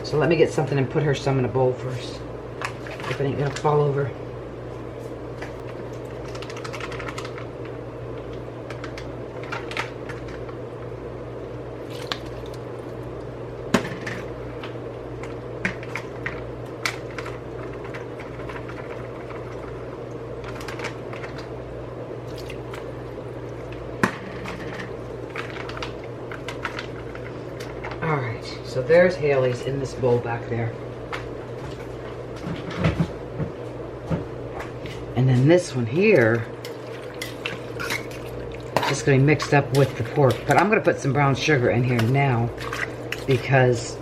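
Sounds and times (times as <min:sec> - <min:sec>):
low kitchen hum: 0:00.0 - 0:44.0
wet sauerkraut squishing: 0:11.8 - 0:13.3, 0:22.2 - 0:24.0, 0:36.1 - 0:44.0.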